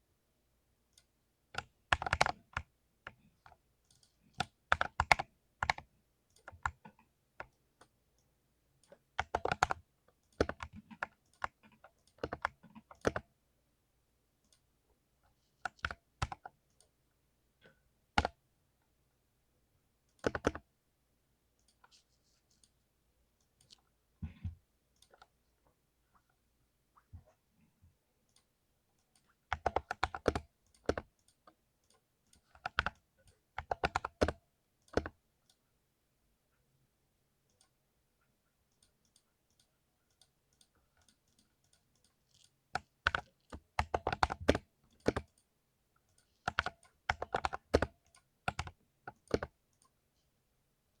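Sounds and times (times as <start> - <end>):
mechanical keyboard typing: 1.6 - 7.5, 8.9 - 13.3, 15.6 - 16.6, 20.1 - 20.7, 29.5 - 31.4, 32.3 - 33.0, 33.6 - 35.2, 40.6 - 45.4, 46.1 - 49.6.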